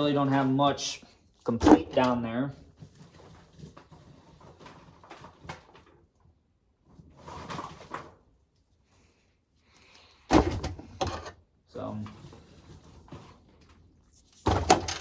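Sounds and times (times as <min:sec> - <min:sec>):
corn knocking and rattling: 0:01.5 - 0:02.3, 0:10.3 - 0:11.3, 0:14.4 - 0:15.0.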